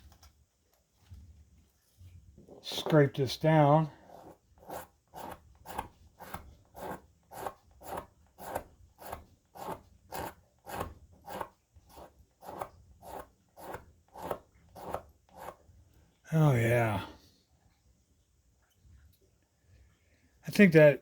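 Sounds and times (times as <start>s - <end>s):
scraping wooden handle: 3.9s - 15.6s.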